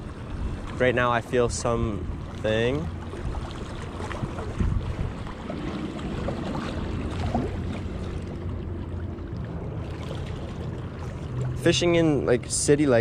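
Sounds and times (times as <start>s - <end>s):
distant traffic: 0.0s - 13.0s
river water moving: 0.0s - 13.0s.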